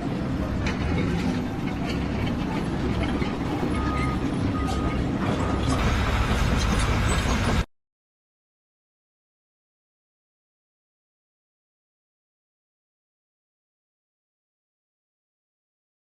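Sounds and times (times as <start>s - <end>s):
machine rumbling: 0.0s - 7.7s.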